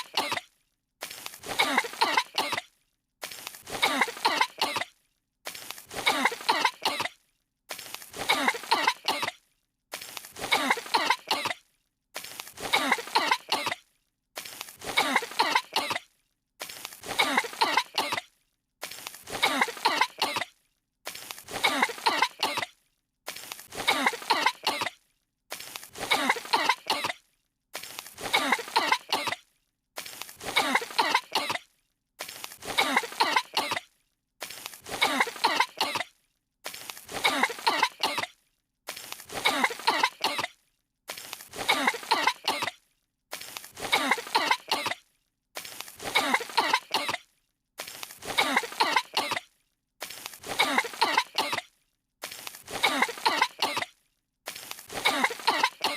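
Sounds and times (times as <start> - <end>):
cartoon characters coughing: 0.0 - 0.6, 1.4 - 2.8, 3.7 - 5.0, 5.9 - 7.2, 8.1 - 9.4, 10.4 - 11.6, 12.6 - 13.8, 14.8 - 16.1, 17.0 - 18.4, 19.3 - 20.6, 21.5 - 22.8, 23.7 - 25.0, 26.0 - 27.3, 28.1 - 29.4, 30.4 - 31.7, 32.6 - 33.9, 34.8 - 36.1, 37.1 - 38.4, 39.2 - 40.6, 41.5 - 42.8, 43.8 - 45.0, 46.0 - 47.3, 48.2 - 49.5, 50.4 - 51.7, 52.6 - 54.0, 54.9 - 55.9.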